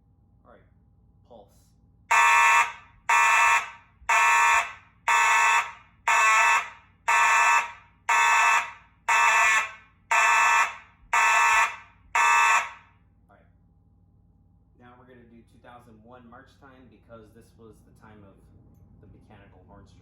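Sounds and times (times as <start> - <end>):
pulsed fire alarm horns: 2.1 - 13.0.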